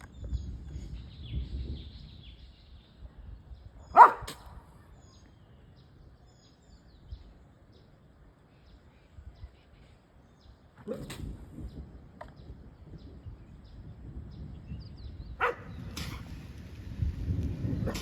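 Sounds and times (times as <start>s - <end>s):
faint birds chirping: 0.0s - 16.6s
dog barking: 3.9s - 4.5s, 15.4s - 15.7s.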